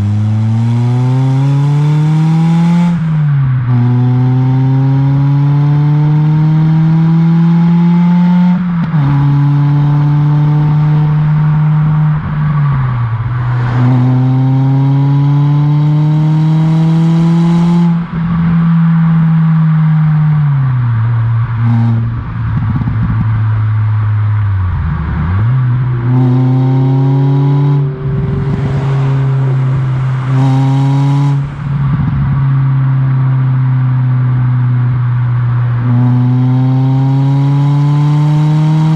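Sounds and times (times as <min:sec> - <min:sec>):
car engine revving through gears: 0:00.0 - 0:38.9
exhaust crackles and burbles: 0:17.9 - 0:36.2.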